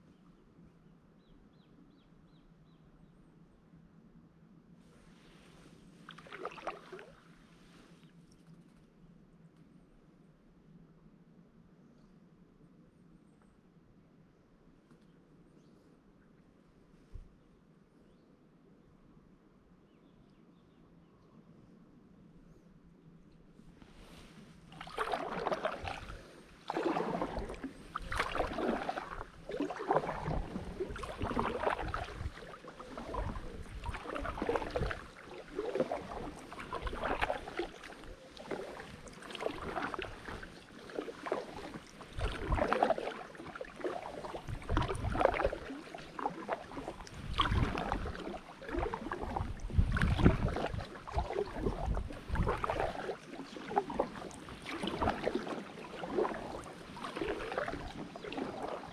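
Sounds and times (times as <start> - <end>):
kayak paddle strokes in water: 4.9 - 8.1, 23.7 - 58.9
water splashing and dripping: 24.8 - 58.9.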